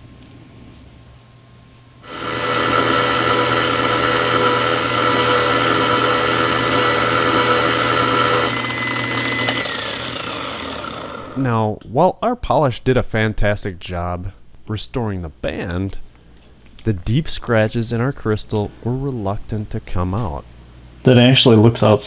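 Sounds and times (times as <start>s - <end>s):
polishing tool motor humming: 2.0s - 11.5s.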